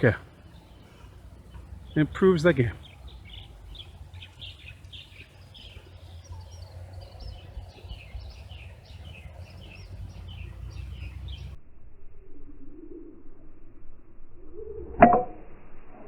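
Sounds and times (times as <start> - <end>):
birds chirping: 0.0 - 11.6
steady low rumble: 0.0 - 12.3.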